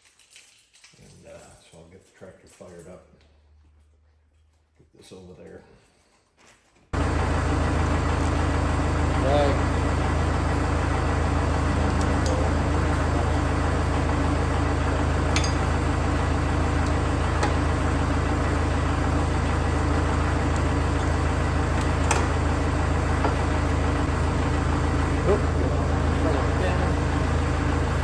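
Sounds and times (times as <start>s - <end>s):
tractor engine idling: 7.0s - 28.0s.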